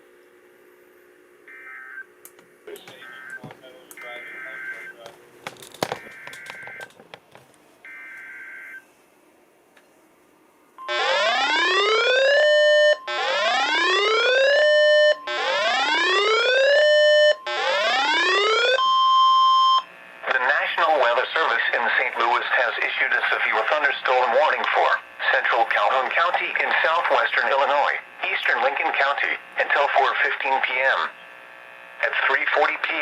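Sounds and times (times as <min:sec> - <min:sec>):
rising electronic alarm: 0:01.5 - 0:02.1, 0:02.9 - 0:05.0, 0:05.8 - 0:06.9, 0:10.8 - 0:19.9.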